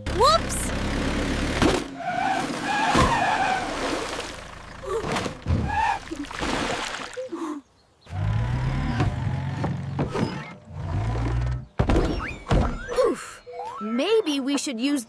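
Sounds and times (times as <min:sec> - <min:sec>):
low engine hum: 0:00.0 - 0:06.2.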